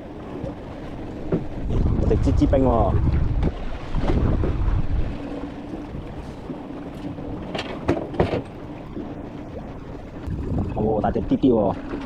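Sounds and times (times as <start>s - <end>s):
boat engine humming: 0.0s - 12.0s
wind noise on microphone: 1.3s - 6.6s, 10.1s - 11.3s.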